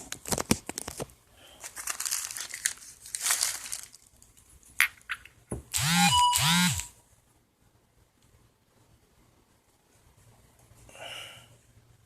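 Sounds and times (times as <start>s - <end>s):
plastic wrap crinkling: 0.0s - 4.5s.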